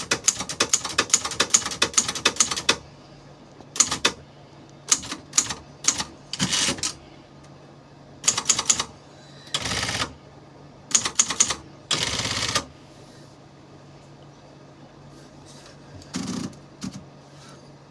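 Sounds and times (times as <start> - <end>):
typewriter key strikes: 0.0 - 2.8, 3.8 - 4.2, 4.9 - 7.0.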